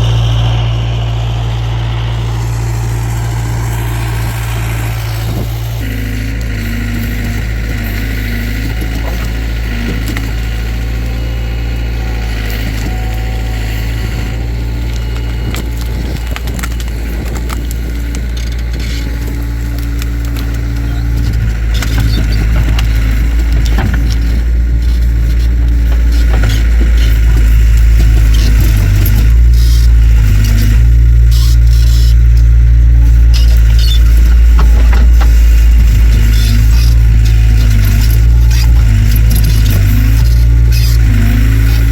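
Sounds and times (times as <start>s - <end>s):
skid steer engine running: 0.0s - 41.9s
wood and brush snapping: 14.8s - 18.7s.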